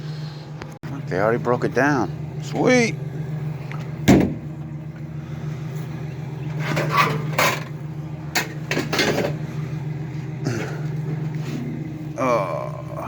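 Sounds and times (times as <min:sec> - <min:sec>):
vehicle engine idling: 0:00.0 - 0:13.0
scrap metal clanking: 0:06.4 - 0:09.6.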